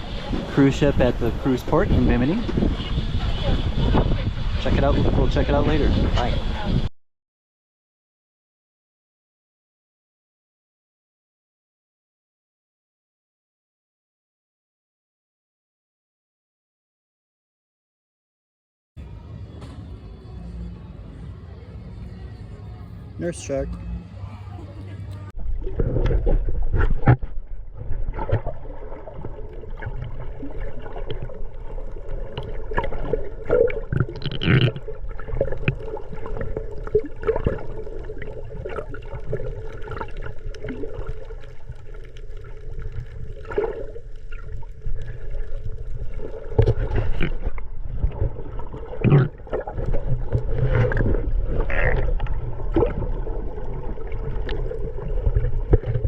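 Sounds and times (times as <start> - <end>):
water gurgling and bubbling: 0.0 - 6.9, 25.3 - 56.0.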